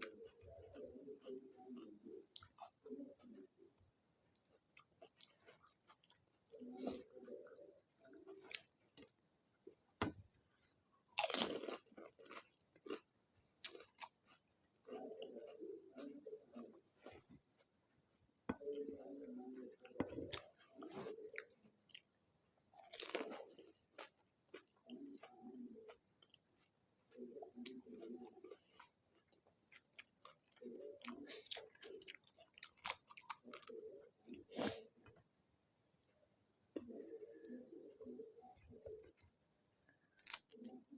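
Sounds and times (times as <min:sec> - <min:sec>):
chewing with small crunches: 0:00.0 - 0:35.3, 0:36.7 - 0:40.9
crisp shells crunching while chewing: 0:11.2 - 0:14.4, 0:22.7 - 0:25.5, 0:27.2 - 0:33.8, 0:40.1 - 0:40.8
crisp shell crunching: 0:40.2 - 0:40.8.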